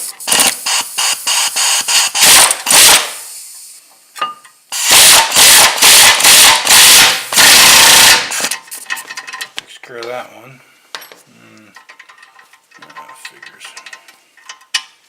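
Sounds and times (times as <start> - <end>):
pneumatic air tool bursts: 0.0 - 3.8, 4.7 - 8.8.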